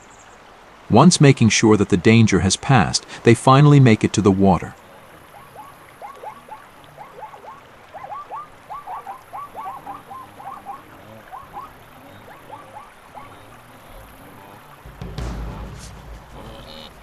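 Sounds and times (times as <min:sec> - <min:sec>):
frogs calling: 0:04.7 - 0:14.9
faint steady hiss: 0:08.6 - 0:17.0.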